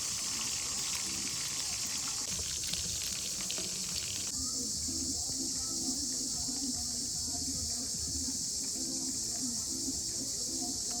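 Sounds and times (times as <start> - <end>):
insects buzzing: 0.0 - 11.0.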